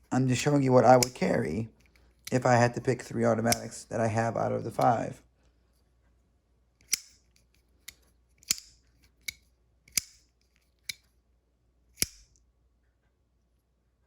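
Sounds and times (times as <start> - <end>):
soft knife clicks: 1.0 - 1.3, 7.8 - 11.1
knife blades snapping open: 6.8 - 7.2, 7.9 - 10.2, 12.0 - 12.3.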